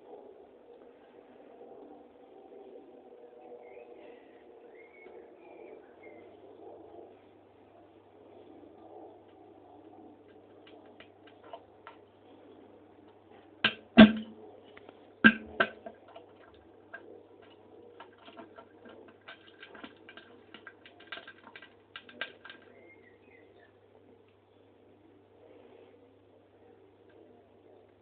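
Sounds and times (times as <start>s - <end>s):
bowel movement crackling and popping: 13.7s - 22.8s.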